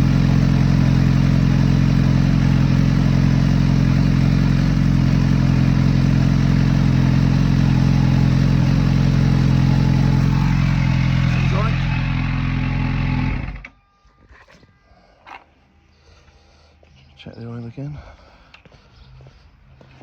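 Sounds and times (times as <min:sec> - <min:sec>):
motorcycle engine idling: 0:00.0 - 0:13.7.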